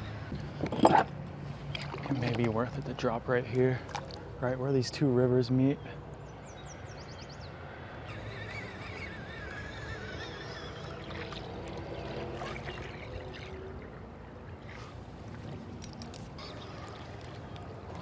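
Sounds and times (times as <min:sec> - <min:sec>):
water lapping against kayak: 0:00.9 - 0:02.7, 0:08.3 - 0:15.7, 0:16.3 - 0:18.0.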